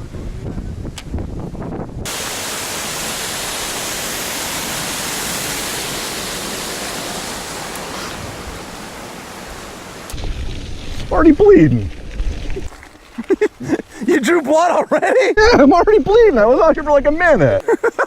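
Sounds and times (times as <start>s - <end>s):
waterfall rushing: 2.1s - 10.5s.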